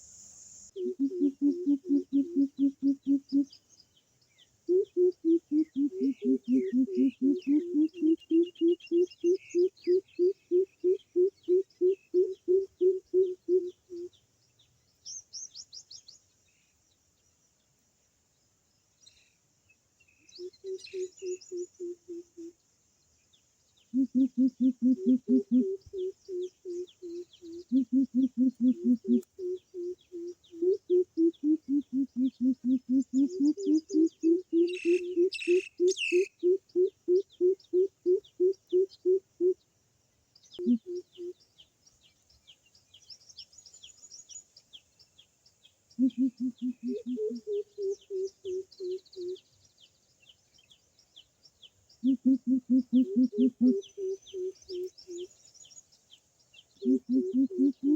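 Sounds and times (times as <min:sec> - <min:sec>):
deep hooting bird calls: 0:00.7 - 0:03.6, 0:04.7 - 0:14.1, 0:20.4 - 0:22.5, 0:23.9 - 0:39.6, 0:40.6 - 0:41.4, 0:46.0 - 0:49.4, 0:52.0 - 0:55.3, 0:56.8 - 0:57.9.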